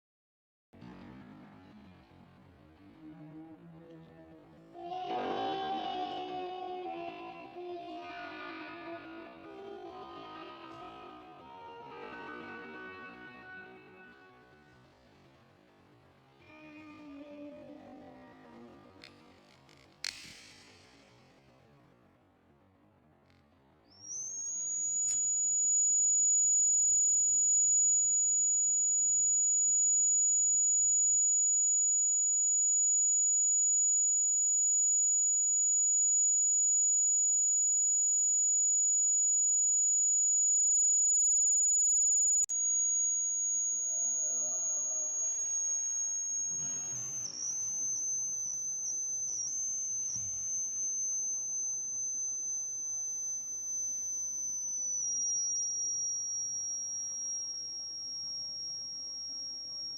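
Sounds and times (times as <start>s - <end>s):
high-pitched alarm buzzer: 10.7s - 14.6s, 24.0s - 59.9s.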